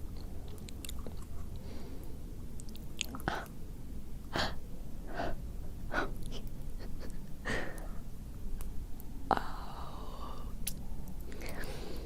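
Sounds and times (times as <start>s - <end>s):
lip smacks: 0.1s - 1.6s, 2.6s - 3.6s, 10.6s - 11.7s
wet chewing: 0.1s - 1.7s, 2.6s - 3.5s.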